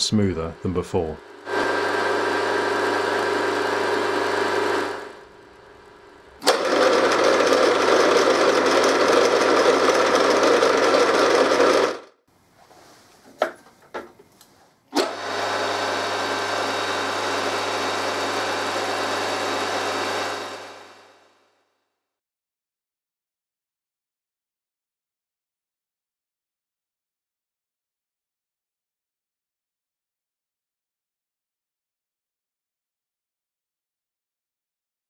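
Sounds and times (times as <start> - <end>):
milling machine running: 1.2 - 12.1, 15.0 - 21.2.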